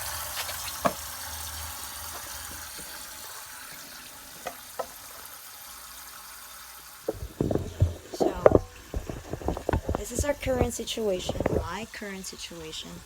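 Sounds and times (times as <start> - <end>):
water spraying from burst pipe: 0.0 - 13.0.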